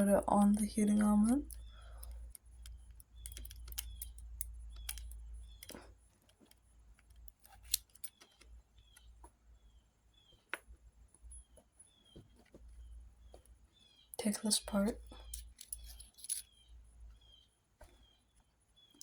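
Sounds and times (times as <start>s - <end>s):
faint low hum: 0.0s - 19.0s
metallic clicks of small parts: 0.8s - 9.2s, 14.6s - 16.6s.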